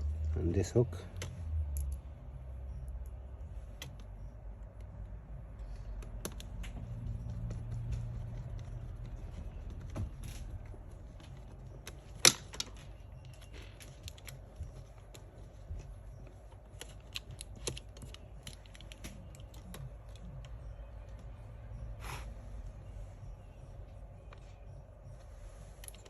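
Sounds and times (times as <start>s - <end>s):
low steady hum: 0.0s - 26.0s
laptop parts clicking and tapping: 2.7s - 21.8s.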